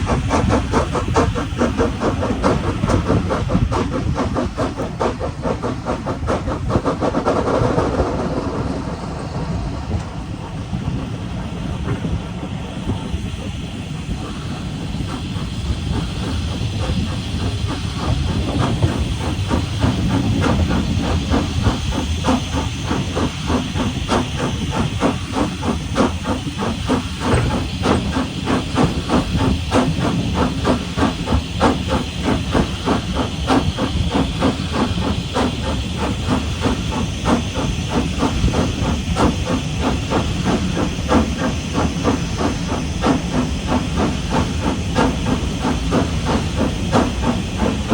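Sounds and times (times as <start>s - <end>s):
steam hissing: 0.0s - 47.9s
steam locomotive exhaust beats: 0.0s - 47.9s.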